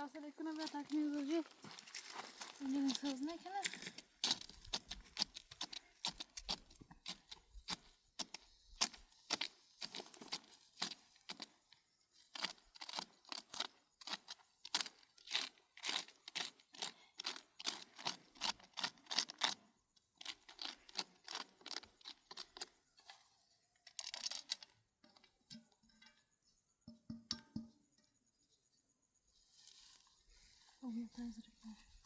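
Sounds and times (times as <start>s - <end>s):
rustling and crackling branches: 0.0s - 7.8s.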